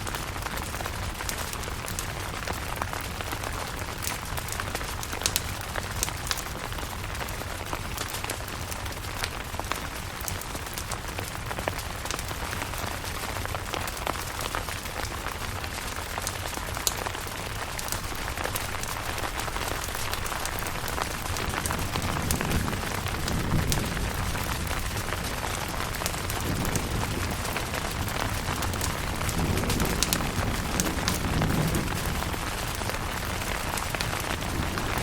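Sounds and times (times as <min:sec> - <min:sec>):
rain on a tent: 0:00.0 - 0:35.0
low rumble of thunder: 0:16.6 - 0:35.0.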